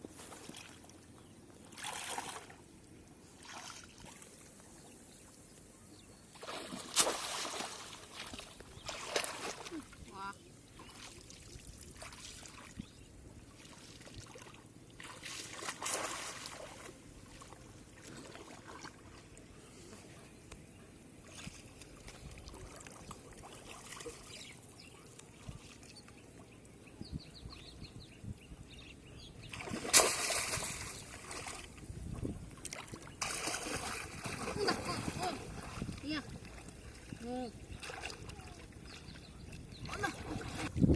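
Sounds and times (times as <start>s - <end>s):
shallow water sloshing: 0.1s - 5.3s, 6.3s - 20.1s, 21.2s - 26.0s, 29.4s - 40.9s
water splash: 6.4s - 9.9s, 15.0s - 16.9s, 29.5s - 31.8s, 32.6s - 36.6s.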